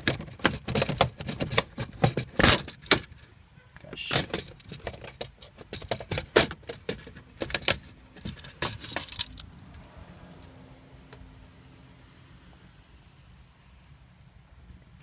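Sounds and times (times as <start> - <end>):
plastic trim clattering: 0.0 - 3.2, 4.1 - 9.5.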